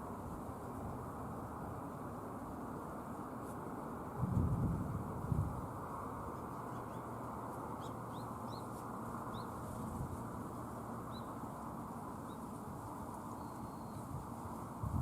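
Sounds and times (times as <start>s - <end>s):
steady background hiss: 0.0s - 15.0s
small bird chirping: 6.5s - 7.1s, 7.8s - 9.6s, 11.1s - 11.4s, 13.4s - 14.1s.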